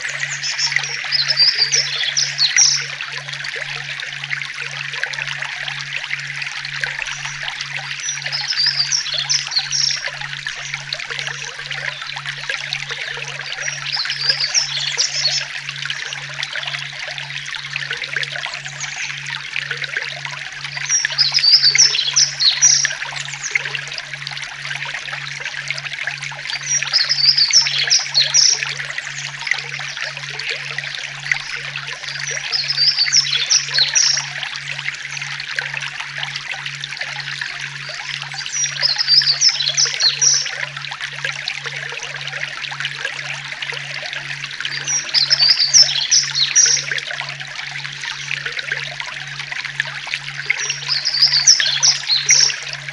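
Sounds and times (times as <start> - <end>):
bird chirping: 0.0 - 2.9, 20.8 - 22.9, 26.6 - 28.7, 32.3 - 34.2, 38.4 - 40.5, 44.7 - 46.9, 50.6 - 52.7
water trickling: 0.0 - 52.9.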